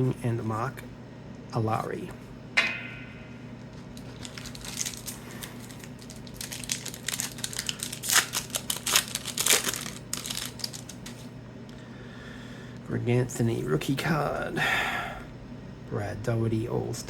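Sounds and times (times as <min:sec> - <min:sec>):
foil wrapper tearing and crinkling: 0:04.0 - 0:11.3.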